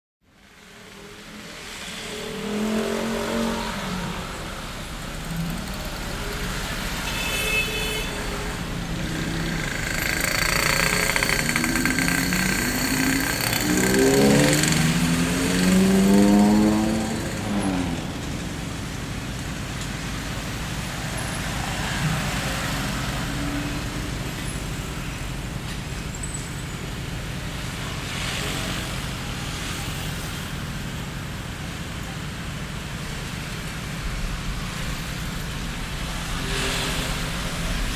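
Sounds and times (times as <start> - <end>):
road traffic noise: 0.2 - 37.9
vehicle accelerating past: 8.9 - 18.5.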